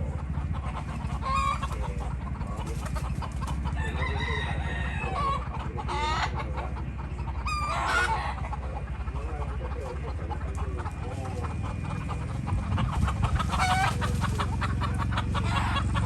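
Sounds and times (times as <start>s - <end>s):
chickens clucking and calling: 0.0s - 16.0s
steady low hum: 0.0s - 16.0s
rooster crowing: 3.7s - 5.4s.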